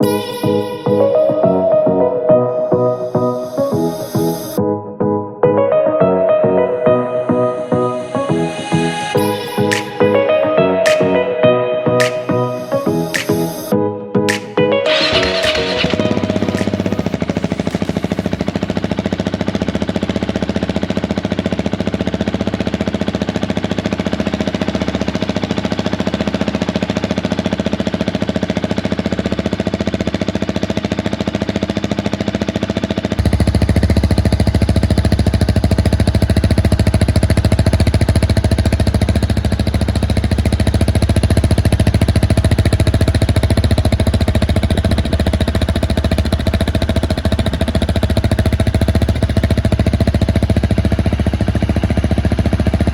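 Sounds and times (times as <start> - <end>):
motorcycle engine idling: 14.9 - 52.9.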